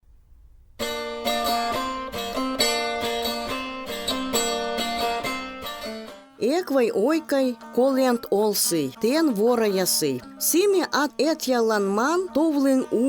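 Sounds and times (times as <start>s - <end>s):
plucked string melody: 0.8s - 13.0s.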